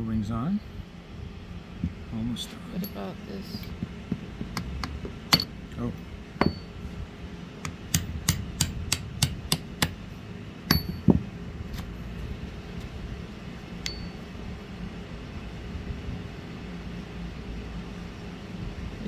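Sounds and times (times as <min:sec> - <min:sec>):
light hammer taps on metal: 0:02.8 - 0:05.6, 0:06.4 - 0:06.8, 0:07.6 - 0:10.0, 0:10.7 - 0:11.3, 0:13.8 - 0:14.2
heavier knock: 0:03.7 - 0:05.5, 0:06.4 - 0:06.7.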